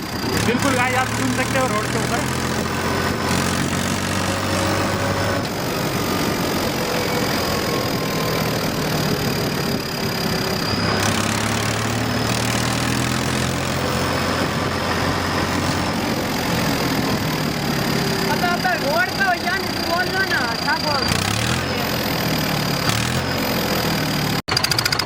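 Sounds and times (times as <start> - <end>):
tractor engine running: 0.0 - 25.0
thin high turbo whistle: 20.3 - 21.1.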